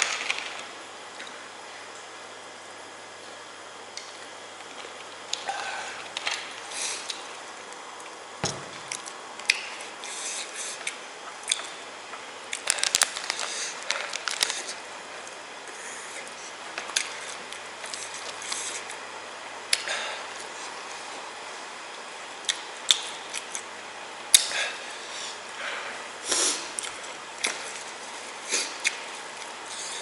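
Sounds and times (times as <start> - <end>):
objects rustling and crinkling: 12.6 - 14.8.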